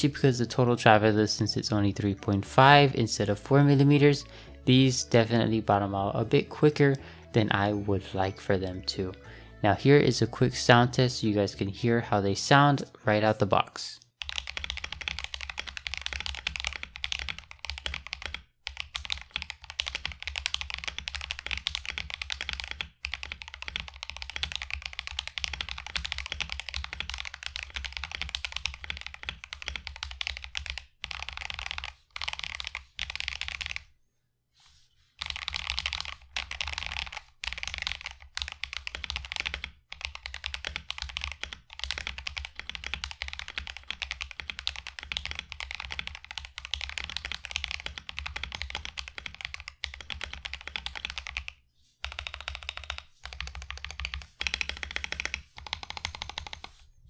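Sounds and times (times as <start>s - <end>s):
typing on a mechanical keyboard: 14.2s - 33.9s, 35.2s - 56.8s.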